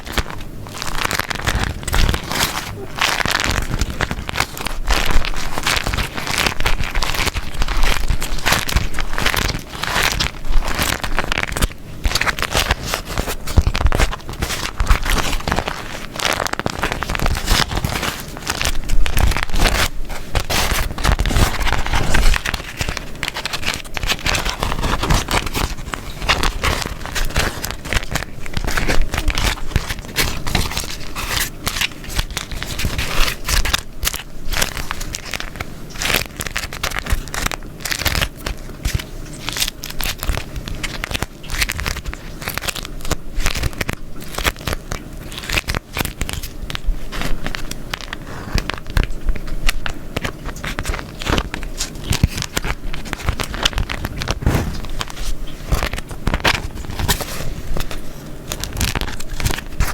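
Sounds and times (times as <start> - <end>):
sticky peeling crackles: 0.0 - 59.9
wax wrap crinkling: 0.0 - 59.9.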